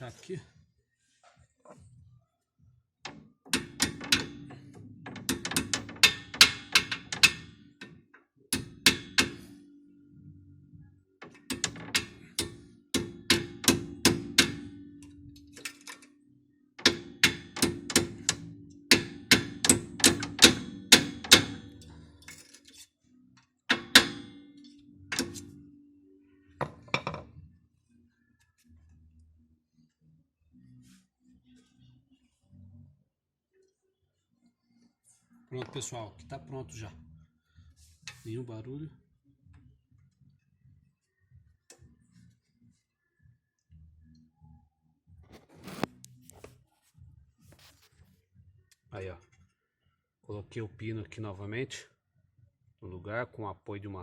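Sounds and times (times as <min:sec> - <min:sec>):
hammer tapping on metal: 0:08.6 - 0:09.5, 0:11.2 - 0:14.8, 0:16.8 - 0:21.9.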